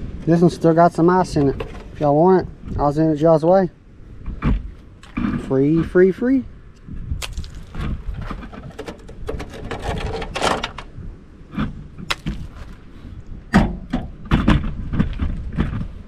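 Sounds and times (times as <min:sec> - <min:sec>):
sheet metal clanking and rattling: 0:01.3 - 0:02.1, 0:08.4 - 0:10.8.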